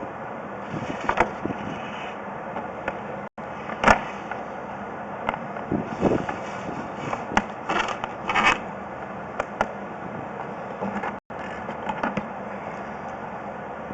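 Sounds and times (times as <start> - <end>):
handling scraping and rubbing: 5.6 - 8.7.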